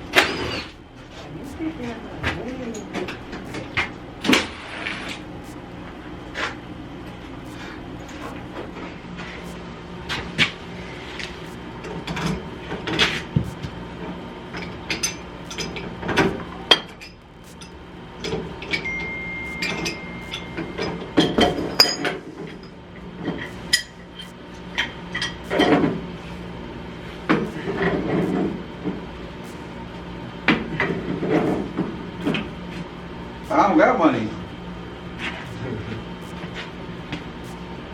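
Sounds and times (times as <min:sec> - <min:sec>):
thin steady tone: 0:00.0 - 0:10.0, 0:14.5 - 0:22.8.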